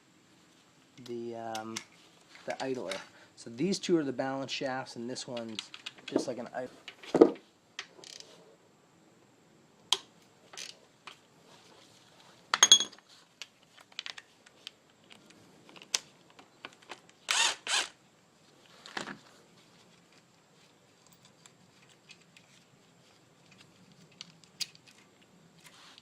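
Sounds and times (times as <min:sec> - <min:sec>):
power tool bursts: 0:17.3 - 0:18.0.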